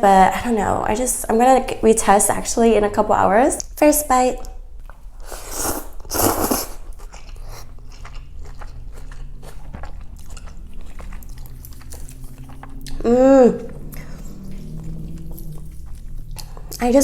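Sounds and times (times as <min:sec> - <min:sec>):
chewing with small clicks: 0:04.4 - 0:05.3, 0:06.8 - 0:17.0
loud slurp of soup: 0:05.2 - 0:07.7.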